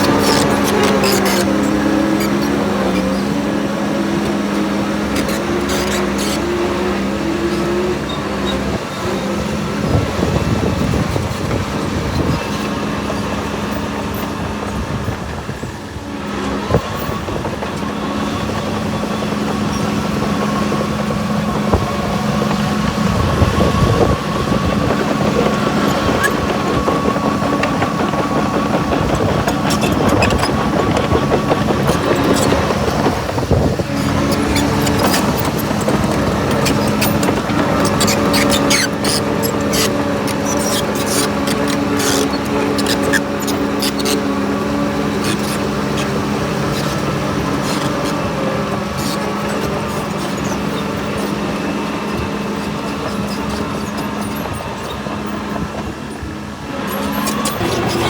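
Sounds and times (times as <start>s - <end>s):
diesel machinery running: 0.0s - 58.0s
knocks and clatter: 16.8s - 55.9s.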